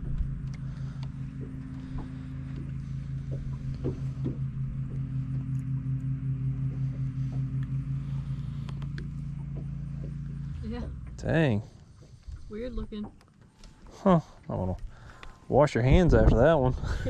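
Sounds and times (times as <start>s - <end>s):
boat motor running: 0.0s - 17.0s
faint clicks: 0.1s - 6.1s, 8.6s - 10.2s, 11.8s - 15.4s.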